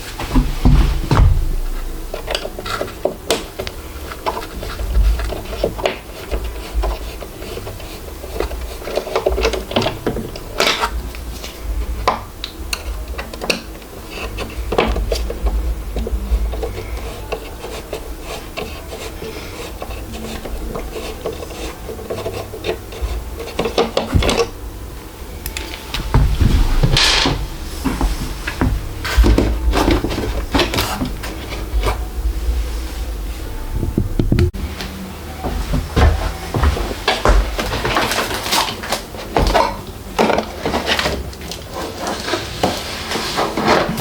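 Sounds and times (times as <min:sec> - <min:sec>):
packing material rubbing and scraping: 0:00.0 - 0:34.5, 0:36.1 - 0:44.0
knocks and clicks: 0:33.7 - 0:34.6.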